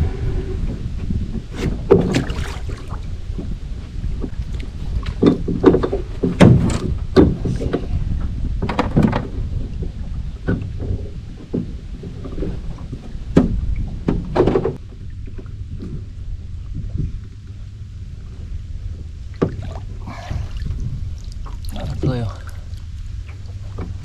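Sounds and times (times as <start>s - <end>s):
wind rumble on microphone: 0.0s - 24.0s
water splashes: 1.7s - 3.5s, 19.3s - 24.0s.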